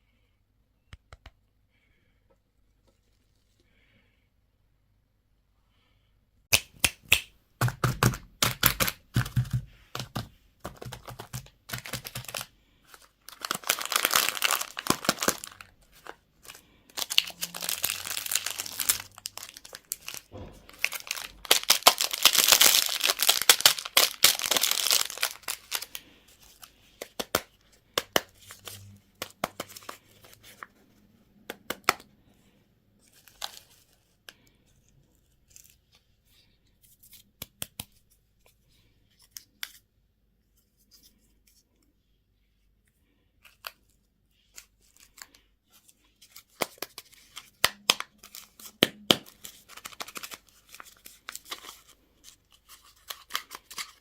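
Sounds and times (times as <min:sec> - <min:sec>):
packaging crinkling and crackling: 0:08.4 - 0:30.7, 0:46.2 - 0:54.0
packaging tearing: 0:10.8 - 0:26.0, 0:46.3 - 0:52.0, 0:52.6 - 0:54.0.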